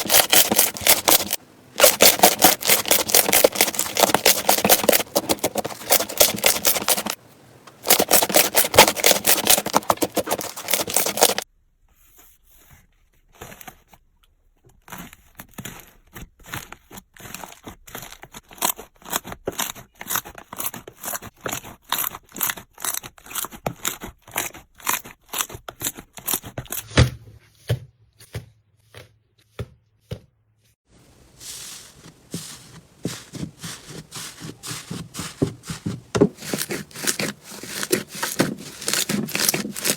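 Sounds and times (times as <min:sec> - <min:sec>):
slime crackling and popping: 0:07.8 - 0:11.4.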